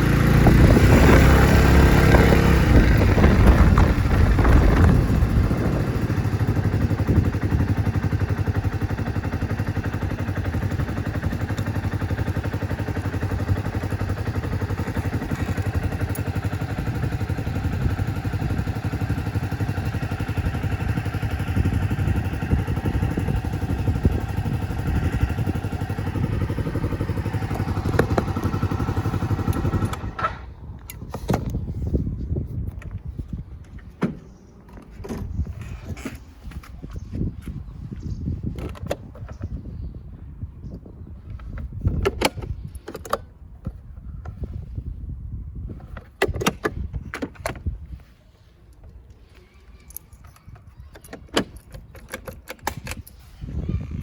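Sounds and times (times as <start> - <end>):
scooter engine running: 0.0 - 37.3.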